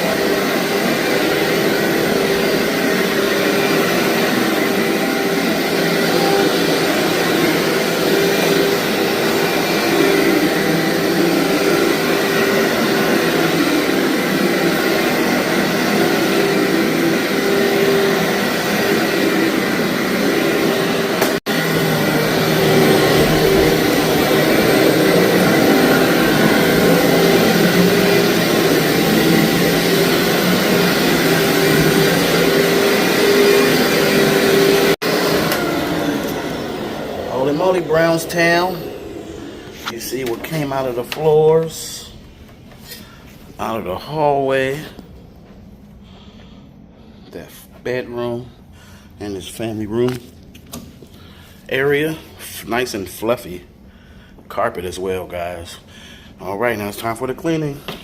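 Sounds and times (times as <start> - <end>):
vacuum cleaner on carpet: 0.0 - 42.2.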